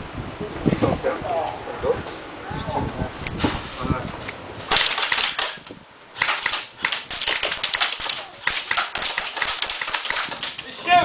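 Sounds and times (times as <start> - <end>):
airsoft guns firing: 4.7 - 5.6, 6.2 - 10.7.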